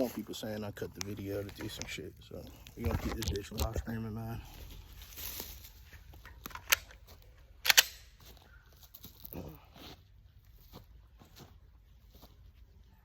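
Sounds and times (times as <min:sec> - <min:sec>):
gun and magazines rattling: 0:00.9 - 0:08.4
sharp metallic clicks: 0:06.3 - 0:07.0, 0:07.6 - 0:08.2.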